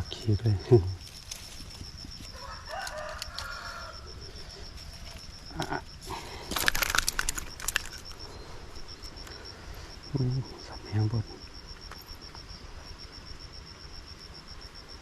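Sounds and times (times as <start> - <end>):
high insect ticking: 0.0 - 15.0
rooster crowing: 2.3 - 4.7
sharp crackling clicks and splashes: 6.4 - 8.2.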